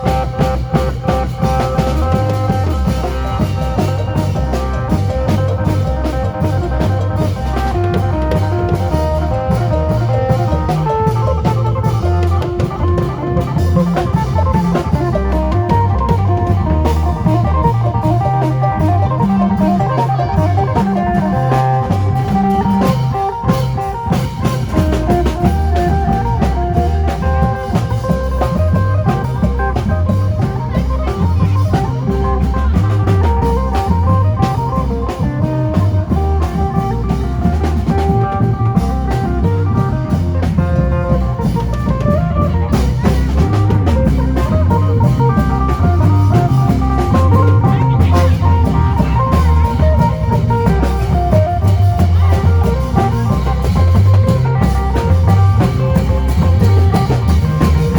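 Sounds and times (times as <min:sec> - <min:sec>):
bass: 0:00.0 - 0:57.9
drum kit beat: 0:00.0 - 0:57.9.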